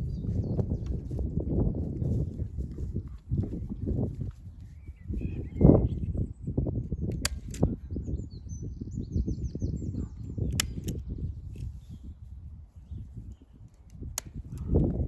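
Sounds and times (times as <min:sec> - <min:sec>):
small bird chirping: 0:04.6 - 0:10.8
sharp clicks: 0:07.1 - 0:07.8, 0:10.5 - 0:11.7, 0:13.7 - 0:14.8.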